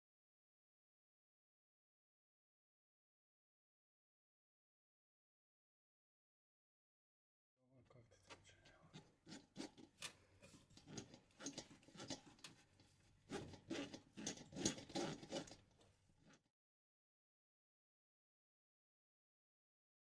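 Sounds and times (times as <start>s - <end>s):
faint scratching and rubbing: 8.1s - 16.5s.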